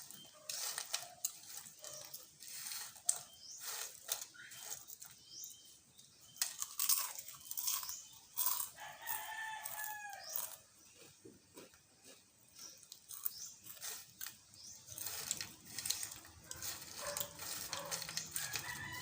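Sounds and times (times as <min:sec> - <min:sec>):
potato chips crunching: 0:06.3 - 0:19.0.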